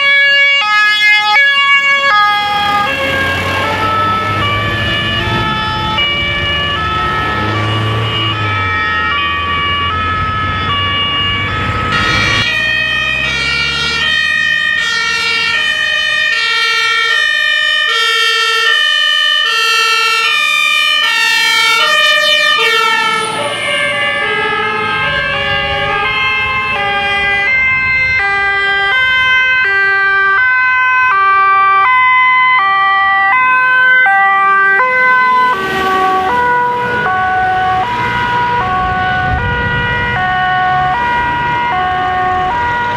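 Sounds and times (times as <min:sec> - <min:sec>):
fire engine two-tone sirens: 0:00.0 - 0:42.9.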